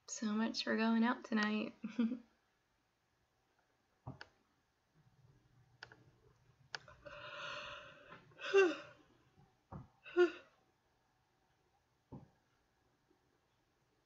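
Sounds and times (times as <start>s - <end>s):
sigh-like breath: 7.0s - 8.7s.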